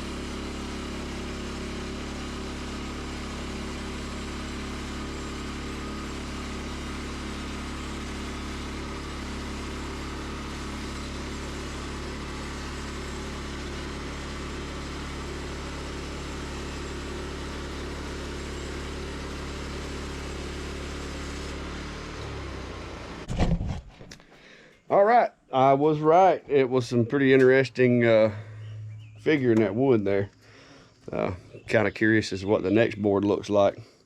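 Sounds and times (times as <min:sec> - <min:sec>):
band sawmill cutting log: 0:00.0 - 0:23.6.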